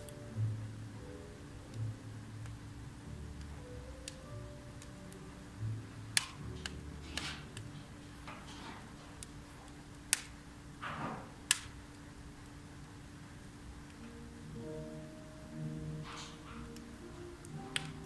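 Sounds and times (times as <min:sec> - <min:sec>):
wood fire crackling and popping: 0:00.0 - 0:15.1, 0:15.7 - 0:18.0
fire hissing: 0:00.0 - 0:18.0.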